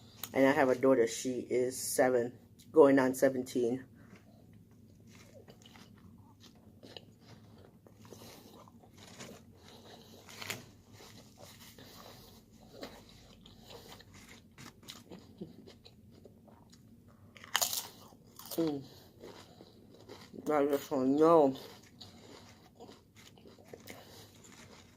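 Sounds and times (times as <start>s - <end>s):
chewing and crunching food: 4.0s - 24.9s.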